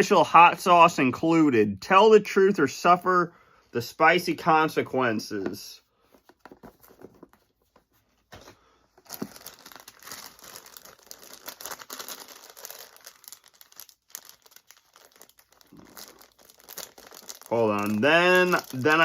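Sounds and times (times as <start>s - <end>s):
packaging crinkling and tearing: 8.3s - 19.0s.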